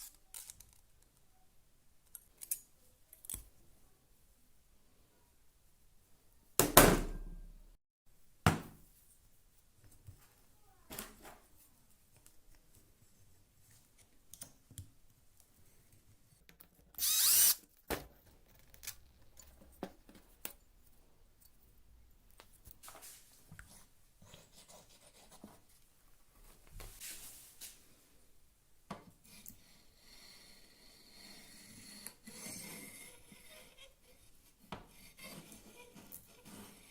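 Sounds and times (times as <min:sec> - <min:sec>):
handheld power tool whirring: 0:17.0 - 0:17.6.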